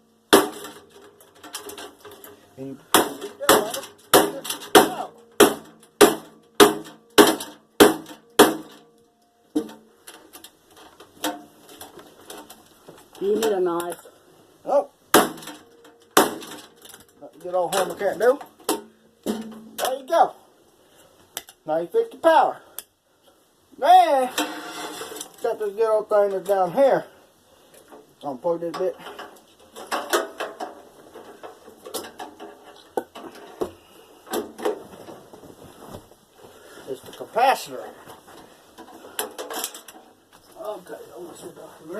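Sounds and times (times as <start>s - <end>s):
tools and metal parts clicking: 0.6s - 2.5s
hammer striking metal: 2.9s - 8.9s.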